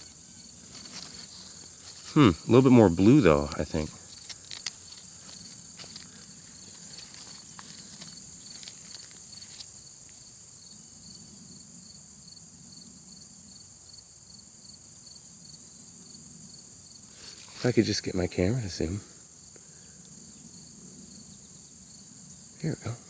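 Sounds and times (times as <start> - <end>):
light crackles and rustles: 0.0 - 10.4, 17.1 - 18.0
insects chirping: 0.0 - 23.0
repeating cricket chirp: 0.0 - 23.0.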